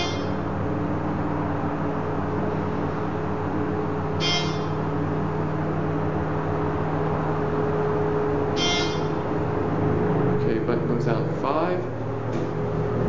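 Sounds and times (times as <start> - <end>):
elevator chime: 0.0 - 0.9, 4.1 - 5.1, 8.5 - 9.4
elevator machinery hum: 0.0 - 13.0.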